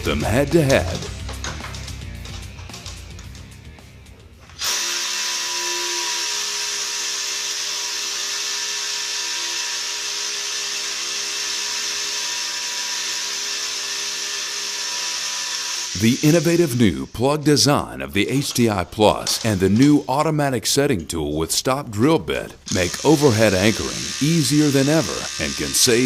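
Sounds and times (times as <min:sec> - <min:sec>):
background music: 0:00.0 - 0:04.6
power drill drilling: 0:04.5 - 0:16.7, 0:19.3 - 0:20.1, 0:22.6 - 0:26.0.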